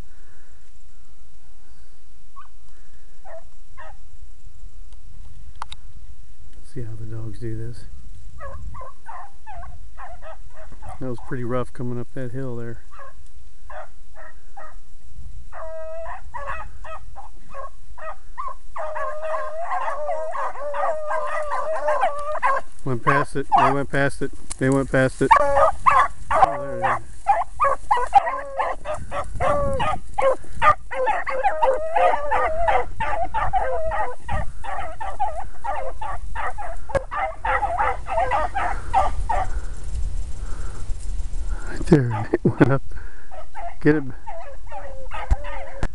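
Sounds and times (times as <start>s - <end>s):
dogs barking and yelping: 3.2s - 4.0s, 8.4s - 11.2s, 12.9s - 14.8s, 15.5s - 23.9s, 25.2s - 39.6s, 41.9s - 42.6s, 43.3s - 45.9s
hounds baying: 3.2s - 4.0s, 8.4s - 11.4s, 12.9s - 14.8s, 15.5s - 39.7s, 41.6s - 45.9s.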